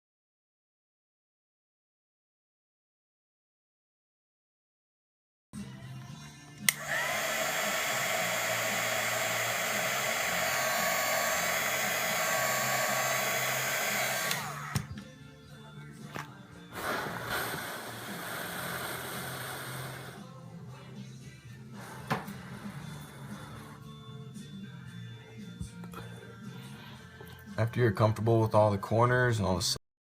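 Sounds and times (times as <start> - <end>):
blower switch click: 6.6 - 7.2, 14.1 - 15.0
fan winding down: 6.6 - 15.0, 16.7 - 20.4
hot-air blower hissing: 6.6 - 15.1, 16.6 - 20.4, 21.5 - 27.2.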